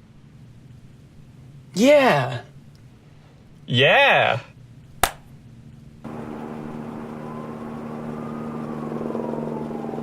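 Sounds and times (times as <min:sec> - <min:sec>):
faint whine: 0:05.4 - 0:10.0
car engine idling: 0:06.1 - 0:10.0.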